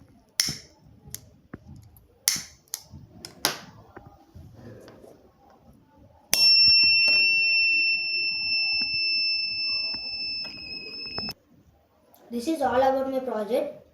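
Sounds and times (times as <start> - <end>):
smoke alarm buzzer tone: 6.4 - 11.4.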